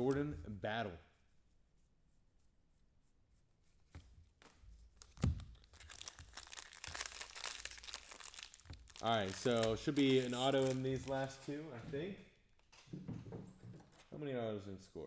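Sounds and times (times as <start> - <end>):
foil wrapper tearing and crinkling: 5.0 - 11.3.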